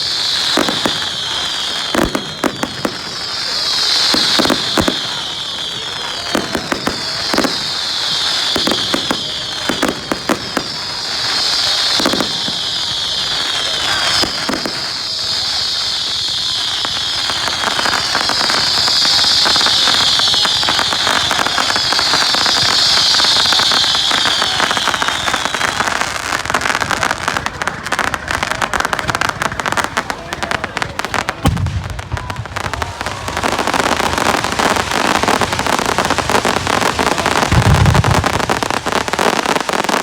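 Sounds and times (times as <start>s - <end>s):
falling screeching whistle: 0.0s - 26.8s
fireworks bangs and crackling: 0.0s - 40.0s.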